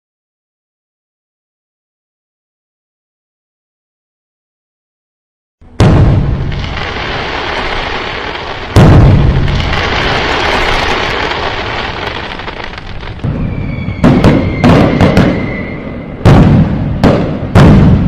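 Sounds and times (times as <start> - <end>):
crackling rumble: 5.6 - 15.4
firecracker bangs: 5.7 - 18.0
steady high whistle: 13.2 - 16.2.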